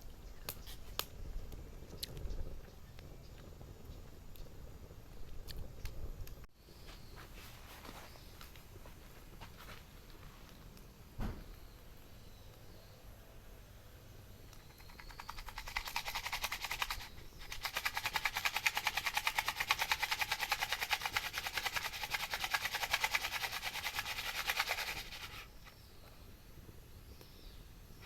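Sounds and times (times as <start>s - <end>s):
campfire sputtering hiss: 0.0s - 28.0s
faint thin whistles: 14.5s - 19.6s, 20.7s - 26.3s.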